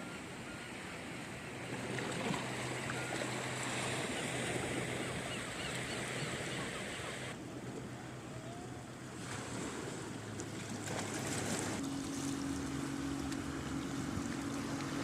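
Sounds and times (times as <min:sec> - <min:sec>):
sea waves washing on shore: 0:00.0 - 0:08.3, 0:08.9 - 0:15.0
low engine hum: 0:00.0 - 0:15.0.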